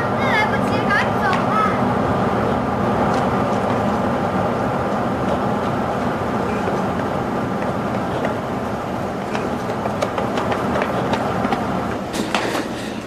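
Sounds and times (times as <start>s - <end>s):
vehicle rumble: 0.0s - 12.4s.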